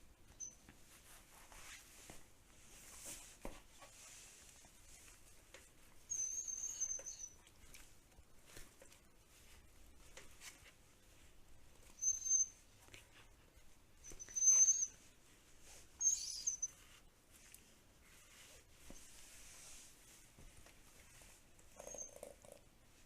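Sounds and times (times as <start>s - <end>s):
dog whining high-pitched: 14.0s - 15.0s.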